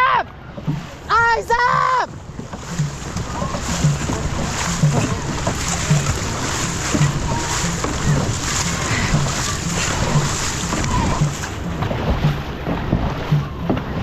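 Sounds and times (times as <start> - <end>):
paddle strokes thudding: 0.0 - 14.0
water splashing and rushing: 0.0 - 14.0
wind: 0.0 - 14.0.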